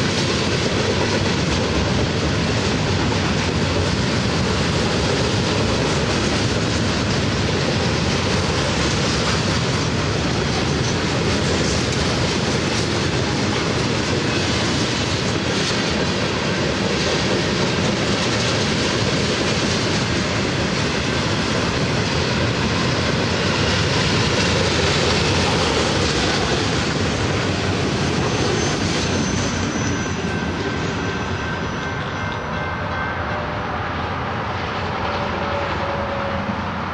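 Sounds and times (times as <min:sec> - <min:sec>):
freight train rumbling past: 0:00.0 - 0:36.9
wheels squealing: 0:25.0 - 0:32.7.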